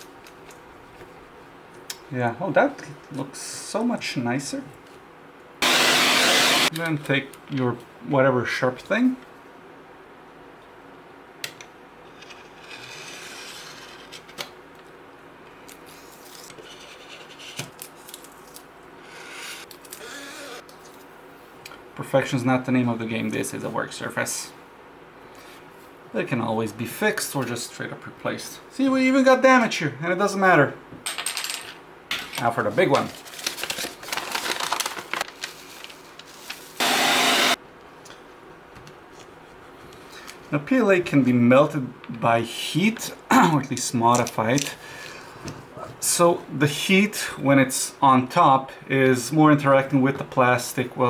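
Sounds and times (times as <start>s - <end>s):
blade scraping vinyl film: 12.1s - 14.4s
adhesive vinyl crinkling: 32.6s - 36.8s.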